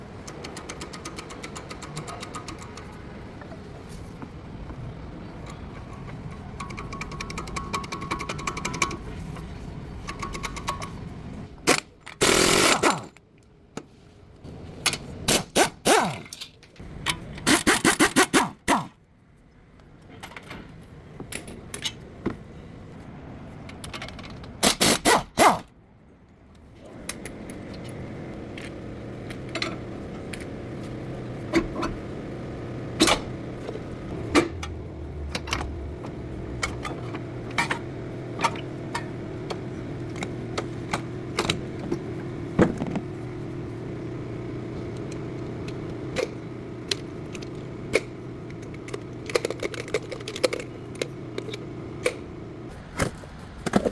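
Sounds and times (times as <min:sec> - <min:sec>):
metal hand tools clicking: 0:17.4 - 0:18.9
steady low hum: 0:25.7 - 0:53.9.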